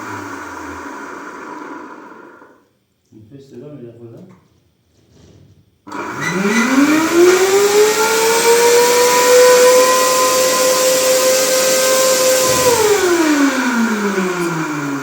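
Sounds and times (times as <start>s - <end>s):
vacuum cleaner motor whine: 0.0s - 2.6s, 5.9s - 15.0s
rush of air: 12.2s - 14.1s.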